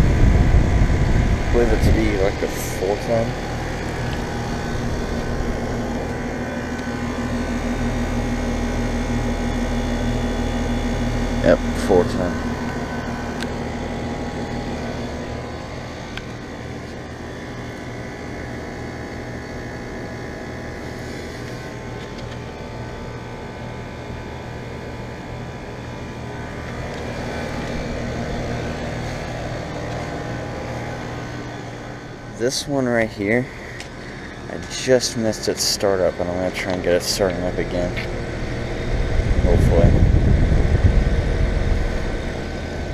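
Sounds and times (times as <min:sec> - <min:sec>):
rush of air from fans: 0:00.0 - 0:17.8, 0:20.6 - 0:22.3, 0:26.2 - 0:32.5, 0:36.8 - 0:42.9
low compressor hum: 0:00.0 - 0:42.9.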